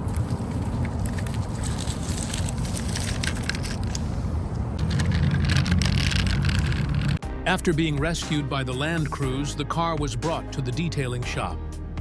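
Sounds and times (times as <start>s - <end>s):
steady low rumble: 0.0s - 8.2s.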